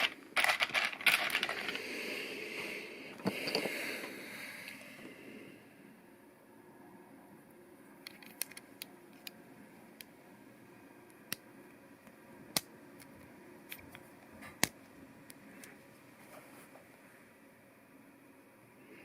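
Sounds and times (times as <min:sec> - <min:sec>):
plastic pieces clicking: 0:00.0 - 0:01.8, 0:08.0 - 0:09.4.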